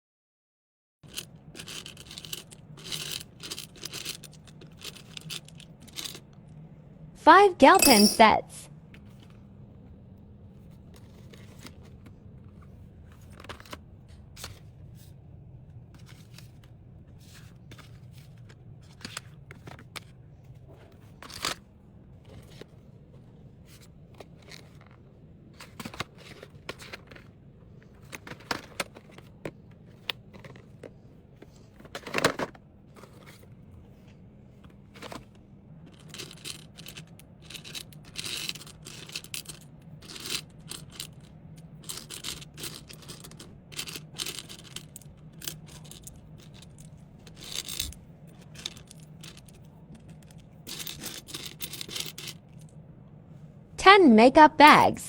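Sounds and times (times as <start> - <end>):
packaging clicks and scrapes: 1.0 - 6.3, 10.7 - 13.8, 16.0 - 20.1, 20.9 - 21.6, 23.6 - 25.0, 25.6 - 33.5, 34.7 - 52.5.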